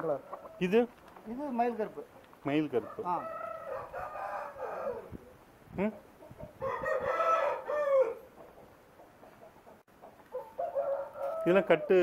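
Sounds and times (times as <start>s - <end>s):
rooster crowing: 2.8s - 5.2s, 6.6s - 8.4s, 10.3s - 12.0s.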